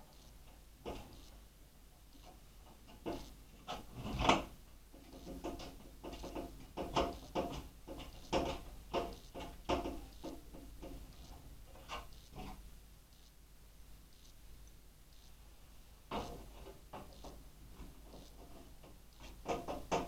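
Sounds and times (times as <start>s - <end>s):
clicks knocks and scrapes of metal parts: 2.2s - 12.6s, 16.1s - 20.0s.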